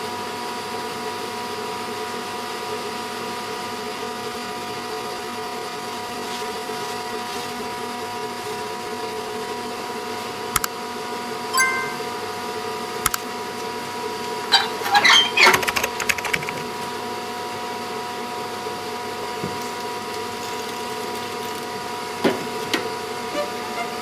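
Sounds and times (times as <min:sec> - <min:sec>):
metallic clicking and rattling: 0:14.5 - 0:16.8.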